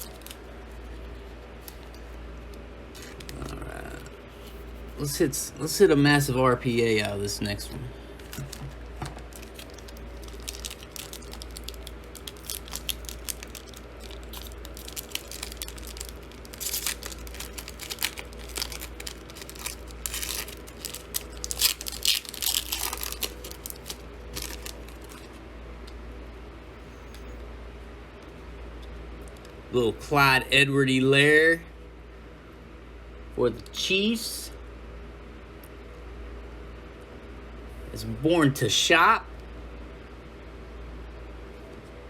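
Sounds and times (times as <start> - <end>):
wrapper tearing and crinkling: 0.0 - 0.8, 3.0 - 4.0, 8.2 - 25.4.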